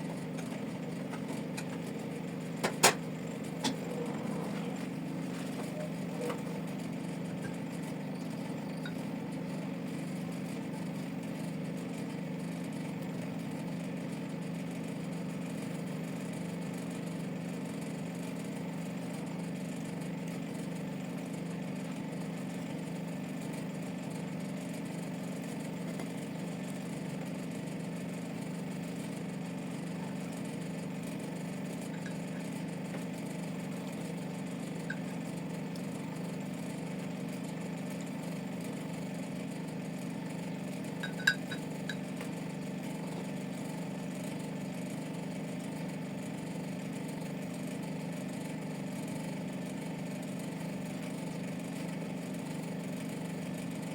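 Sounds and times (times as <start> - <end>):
low mechanical drone: 0.0 - 10.7.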